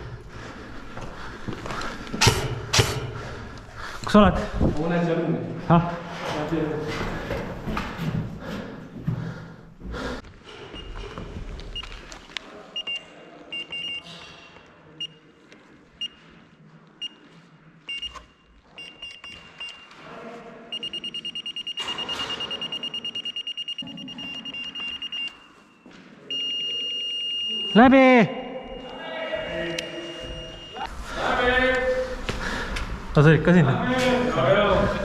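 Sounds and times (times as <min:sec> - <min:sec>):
electronic beeper beeping: 0:20.8 - 0:25.4.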